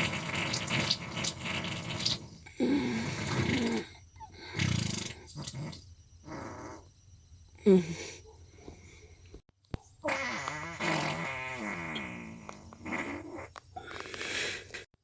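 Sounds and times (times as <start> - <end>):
bodily gas sounds: 10.0 - 14.9.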